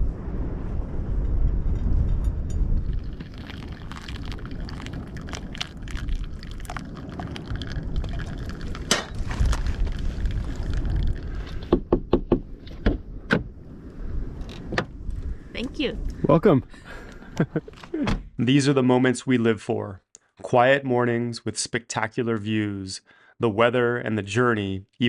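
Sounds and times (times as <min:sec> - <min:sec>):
wind buffeting microphone: 0:00.0 - 0:17.7.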